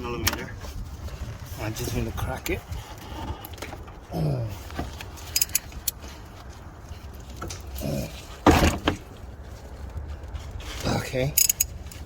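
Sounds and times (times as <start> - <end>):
metal tools clinking: 5.1 - 6.1, 11.2 - 12.0.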